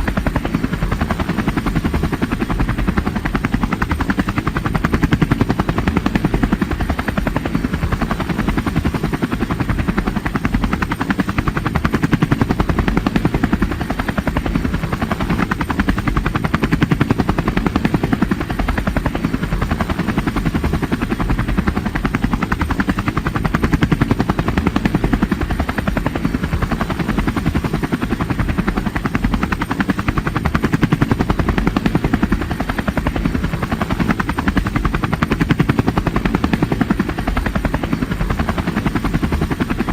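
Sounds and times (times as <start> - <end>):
helicopter rotor chopping: 0.0 - 39.9.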